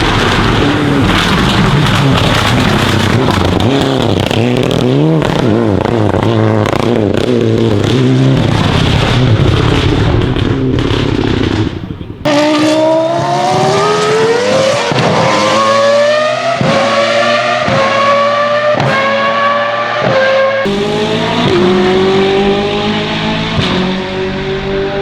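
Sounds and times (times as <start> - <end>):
exhaust pops on gear shifts: 0.0 - 12.5
race car engine accelerating: 0.0 - 25.0.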